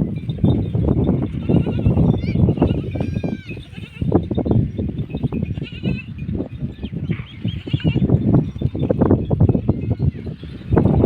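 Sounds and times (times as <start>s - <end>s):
hooves knocking and shuffling: 0.0s - 11.0s
sheep bleating: 1.3s - 4.2s, 5.6s - 6.2s, 7.1s - 8.1s.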